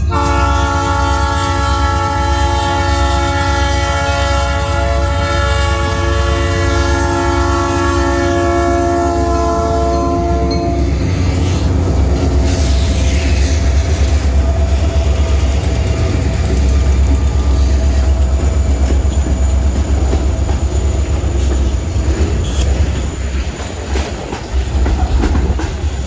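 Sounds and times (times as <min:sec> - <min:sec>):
train horn: 0:00.0 - 0:19.4
locomotive engine rumble: 0:00.0 - 0:26.0
train wheels clickety-clack: 0:09.6 - 0:26.0.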